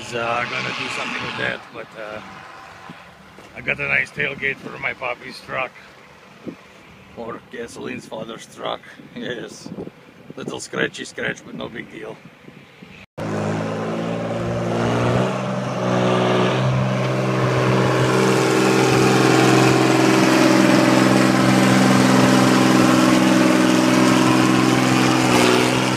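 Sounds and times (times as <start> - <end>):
heavy diesel engine running: 16.4 - 25.9.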